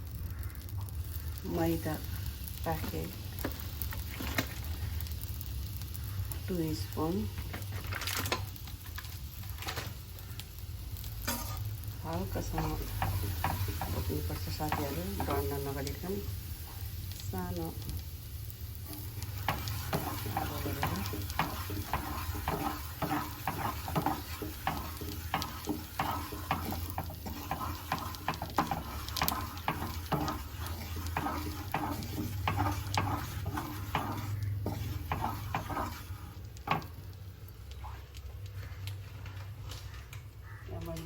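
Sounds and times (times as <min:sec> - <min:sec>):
light sizzle: 0:00.0 - 0:41.0
spoon scraping and tapping a pan: 0:11.2 - 0:11.7, 0:12.4 - 0:16.0, 0:18.9 - 0:37.1.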